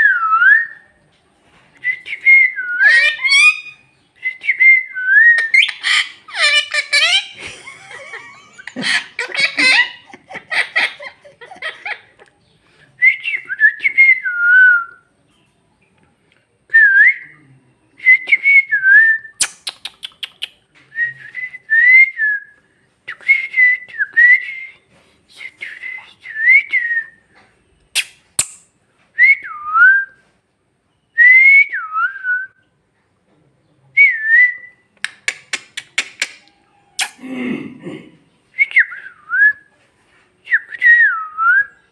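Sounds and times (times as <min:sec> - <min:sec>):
parrot whistling: 0:05.3 - 0:07.4
parrot chattering: 0:05.4 - 0:07.4, 0:08.3 - 0:11.8.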